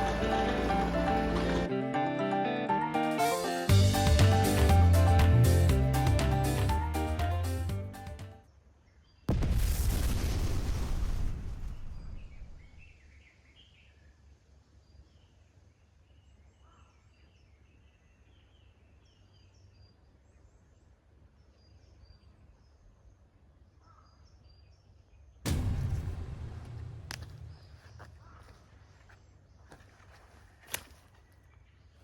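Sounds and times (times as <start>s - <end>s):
steady low rumble: 25.5s - 28.4s.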